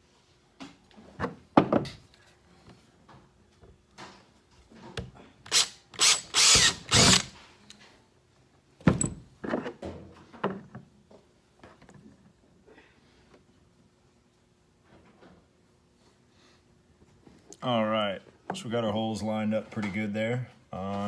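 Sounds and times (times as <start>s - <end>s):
power drill drilling plastic: 5.5s - 7.4s.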